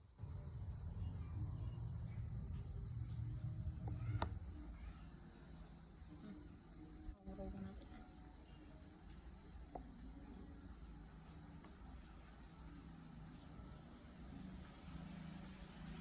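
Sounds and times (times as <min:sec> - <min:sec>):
crickets trilling: 0:00.0 - 0:16.0
low background rumble: 0:00.2 - 0:05.0.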